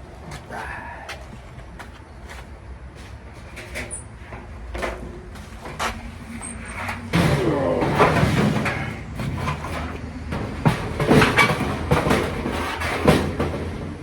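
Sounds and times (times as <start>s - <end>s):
knocks and clanks of metal parts: 3.4s - 14.0s.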